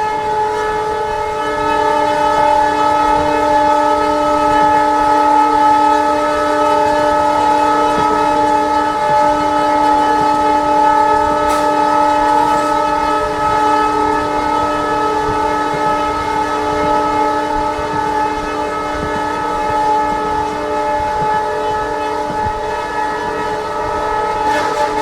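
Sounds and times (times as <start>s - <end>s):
locomotive air horn blast: 0.0s - 25.0s.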